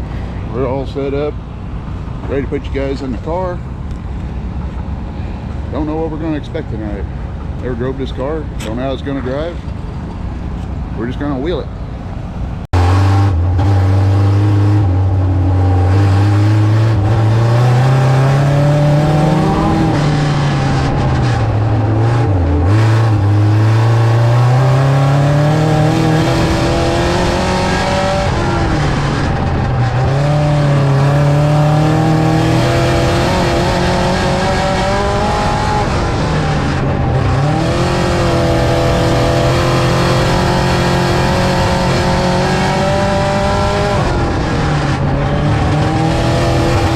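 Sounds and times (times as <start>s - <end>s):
race car engine accelerating: 12.8s - 46.9s.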